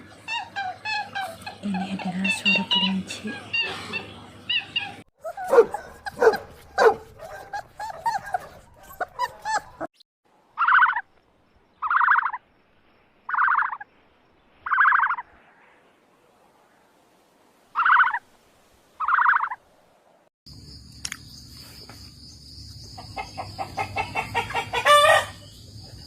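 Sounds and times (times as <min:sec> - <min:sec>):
dog barking and yipping: 0:04.6 - 0:09.9.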